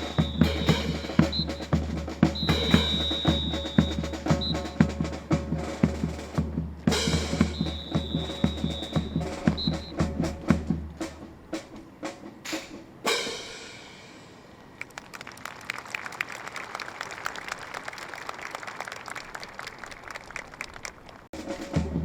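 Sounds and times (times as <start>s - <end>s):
drum-led marching music: 0.0s - 14.2s, 21.3s - 22.0s
cymbal crash: 12.5s - 14.4s
crowd applauding: 14.7s - 21.3s.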